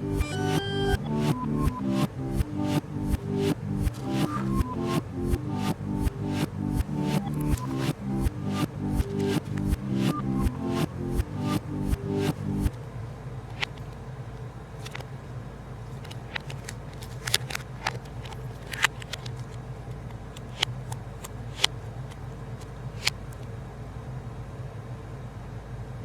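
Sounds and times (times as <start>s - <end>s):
steady low hum: 0.0s - 14.7s.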